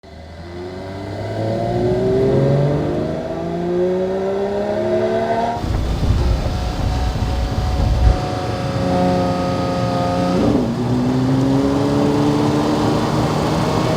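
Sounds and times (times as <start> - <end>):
car engine accelerating: 0.1 - 13.9
heavy rough engine rumble: 5.6 - 12.2.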